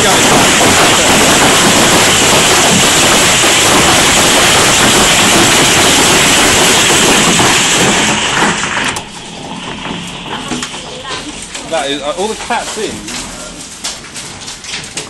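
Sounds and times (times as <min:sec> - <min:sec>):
heavy hail pelting down: 0:00.0 - 0:13.3.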